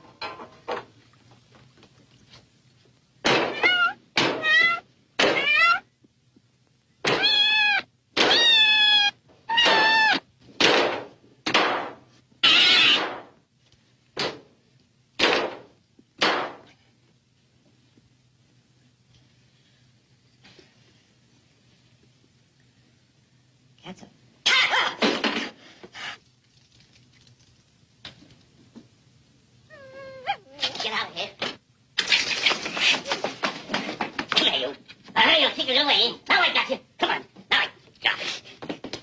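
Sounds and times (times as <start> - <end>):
cat meowing: 3.5 - 5.9, 7.1 - 10.3, 12.4 - 13.1, 29.7 - 30.7.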